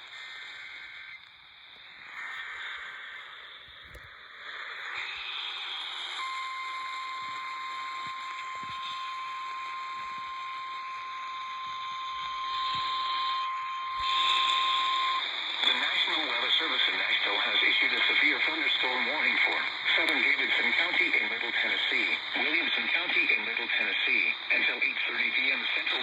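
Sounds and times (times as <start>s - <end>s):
radio static: 0.0s - 5.3s, 6.0s - 26.0s
steady warning alarm tone: 6.0s - 24.4s.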